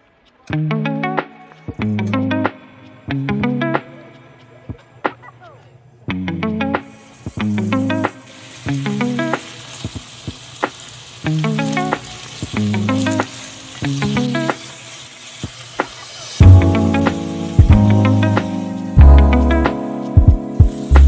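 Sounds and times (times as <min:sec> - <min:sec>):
music with plucked notes: 0:00.5 - 0:04.3, 0:16.4 - 0:21.0
meat sizzling in oil: 0:06.9 - 0:21.0.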